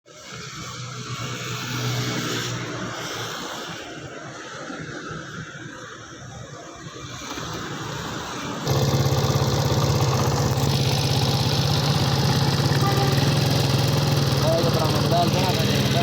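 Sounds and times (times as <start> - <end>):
motorcycle engine starting and idling: 7.2 - 16.0.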